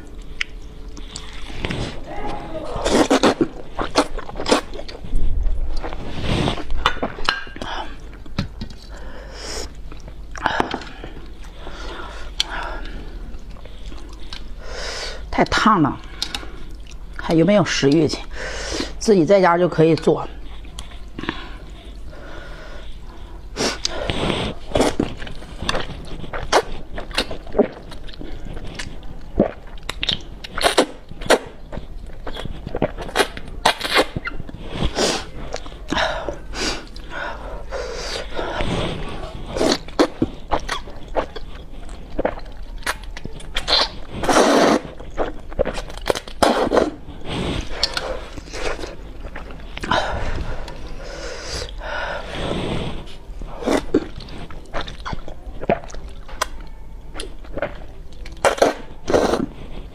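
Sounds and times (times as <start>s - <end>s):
person slurping noodles: 1.4s - 4.7s, 37.7s - 41.3s, 43.7s - 45.8s, 46.4s - 55.1s, 58.4s - 59.6s.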